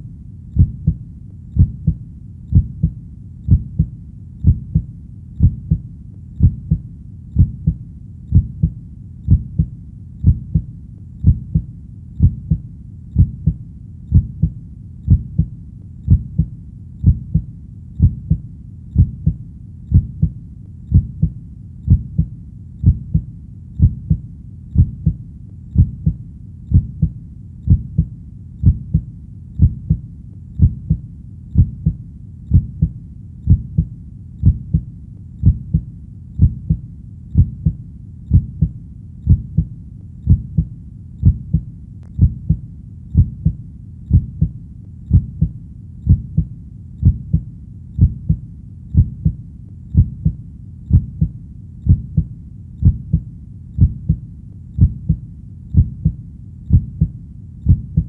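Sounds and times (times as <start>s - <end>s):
heartbeat lub-dub: 0.0s - 58.0s.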